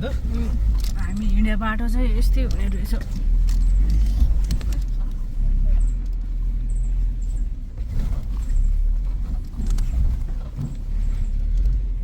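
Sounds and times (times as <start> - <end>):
vehicle engine and road rumble: 0.0 - 12.0
wheels and body knocking on bumps: 0.0 - 12.0.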